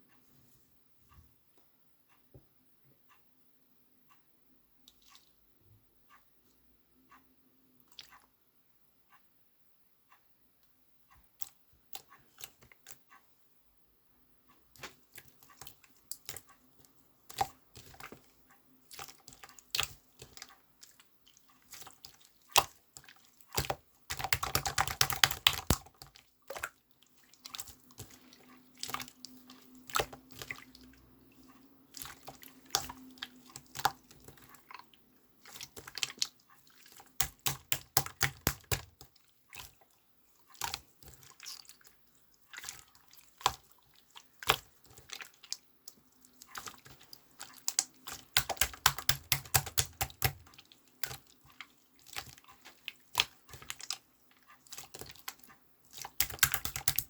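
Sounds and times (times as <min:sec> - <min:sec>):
small sharp clicks and taps: 0:23.5 - 0:26.6, 0:37.1 - 0:39.1, 0:47.6 - 0:51.2, 0:54.8 - 0:57.0.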